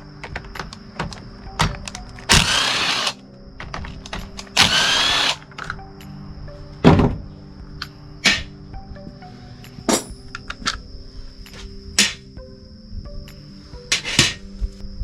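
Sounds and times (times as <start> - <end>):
clicks of handled parts: 0.2 - 2.3, 5.4 - 5.8, 10.0 - 10.8
cordless drill whining: 2.3 - 3.2, 4.6 - 5.4
thump: 6.8 - 7.2.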